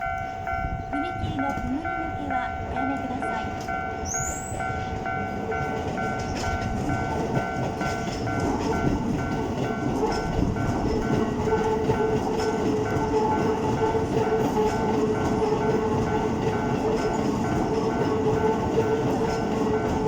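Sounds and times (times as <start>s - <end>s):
level crossing bell ringing: 0.0s - 10.0s
train running noise: 0.0s - 20.0s.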